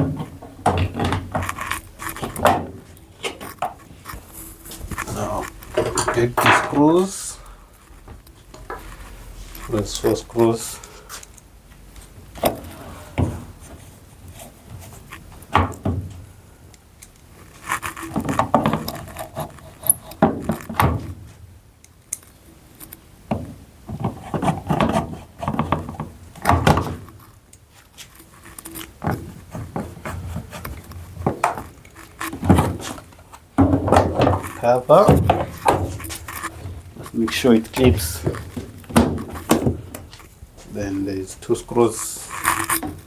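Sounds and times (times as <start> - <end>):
plastic parts and screws clattering: 0.0 - 7.0, 28.0 - 40.3.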